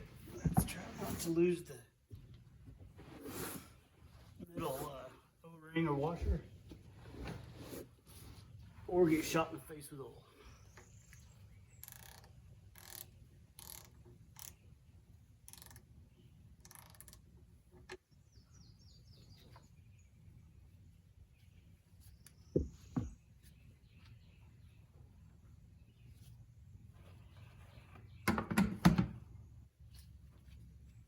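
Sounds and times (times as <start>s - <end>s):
birds chirping: 8.8s - 17.1s, 17.8s - 28.4s
ratchet wrench clicking: 11.8s - 14.6s, 15.4s - 15.9s, 16.6s - 17.2s.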